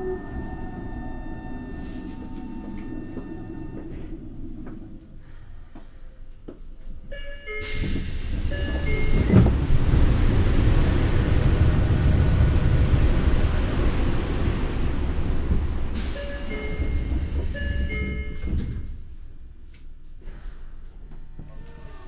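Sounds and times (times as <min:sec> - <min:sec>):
train rumble and hiss: 0:07.6 - 0:20.9.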